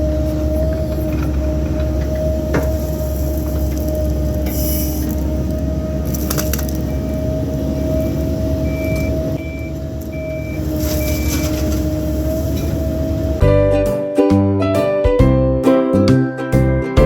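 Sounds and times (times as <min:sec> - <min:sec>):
backup alarm beeping: 0:00.0 - 0:13.4
diesel equipment whining: 0:00.0 - 0:14.0
music: 0:13.4 - 0:17.0.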